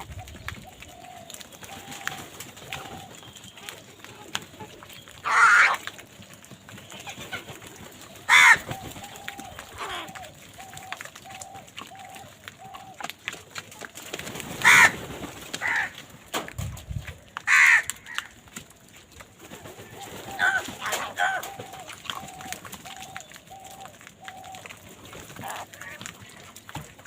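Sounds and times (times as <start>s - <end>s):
crows cawing: 5.2s - 5.9s, 8.3s - 13.0s, 14.6s - 15.0s, 15.6s - 16.0s, 17.4s - 18.4s, 20.3s - 24.6s.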